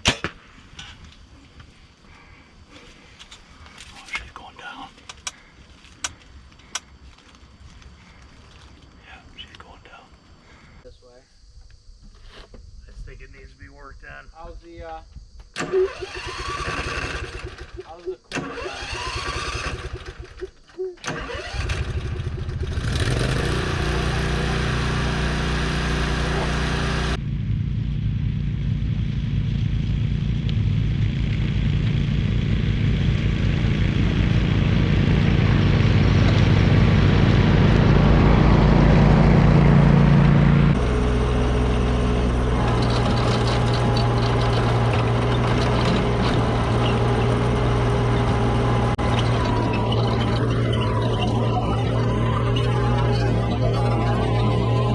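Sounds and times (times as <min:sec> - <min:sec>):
vehicle engine while driving: 0:21.4 - 0:54.9.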